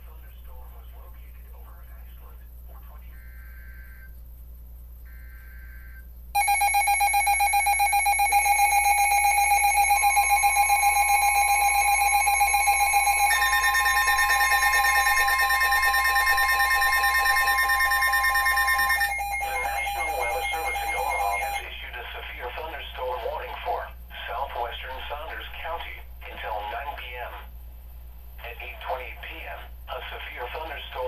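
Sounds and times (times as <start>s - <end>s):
two-tone alarm with harsh beating: 5.1s - 21.7s.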